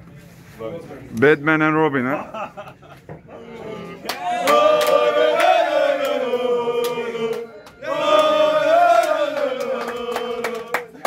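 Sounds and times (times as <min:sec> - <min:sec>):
men chanting together: 0:03.4 - 0:11.0
sharp claps or bangs: 0:04.0 - 0:06.2.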